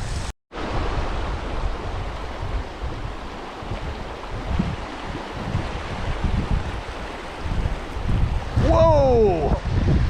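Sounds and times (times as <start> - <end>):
stream water rushing: 0.6 - 9.8
wind buffeting microphone: 0.6 - 10.0.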